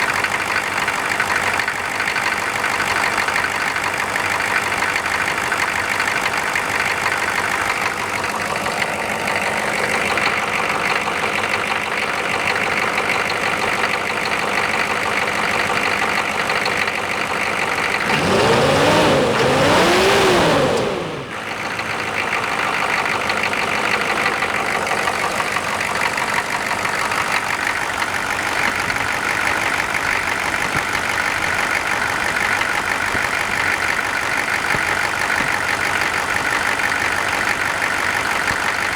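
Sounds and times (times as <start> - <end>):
diesel engine running: 0.0 - 38.9
engine fan roaring: 6.4 - 37.6
engine revving: 14.6 - 27.5.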